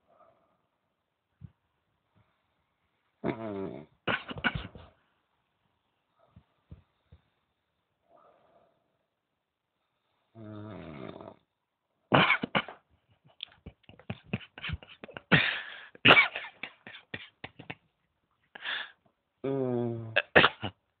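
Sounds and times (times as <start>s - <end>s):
person snoring: 3.2s - 4.0s, 10.3s - 11.4s, 18.6s - 20.3s
snorts coughs and throat noises: 3.2s - 5.0s, 12.1s - 17.8s, 20.2s - 20.8s.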